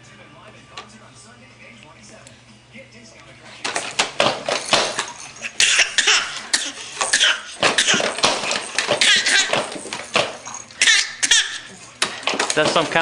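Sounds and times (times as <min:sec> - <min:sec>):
boy fake coughing: 0:05.6 - 0:08.1, 0:09.0 - 0:09.5, 0:10.8 - 0:11.7.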